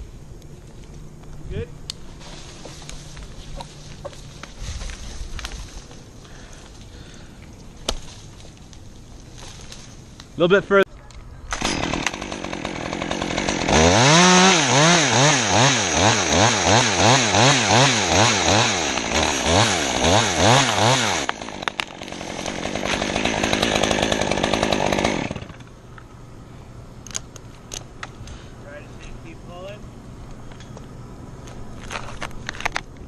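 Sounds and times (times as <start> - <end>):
chainsaw revving: 11.5 - 25.7.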